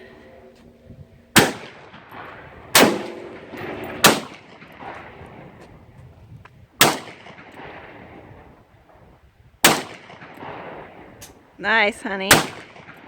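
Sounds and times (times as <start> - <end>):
gunshots: 1.3 - 5.6, 6.8 - 8.4, 9.6 - 11.1, 12.3 - 13.0.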